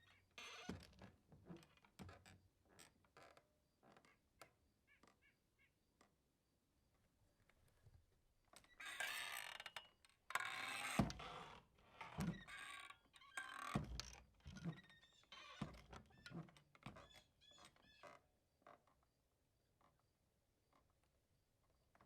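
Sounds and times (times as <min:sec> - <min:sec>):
door hinges creaking: 0:10.6 - 0:18.1.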